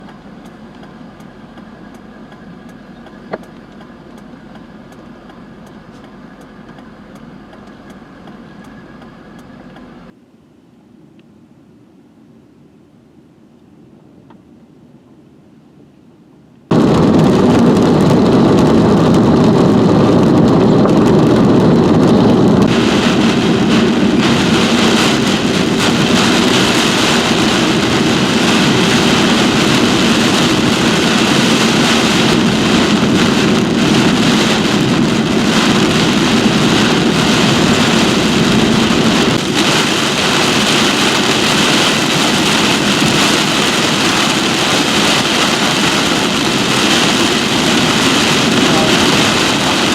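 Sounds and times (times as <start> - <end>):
heavy rain: 16.7 - 49.9
strong wind: 16.7 - 49.9.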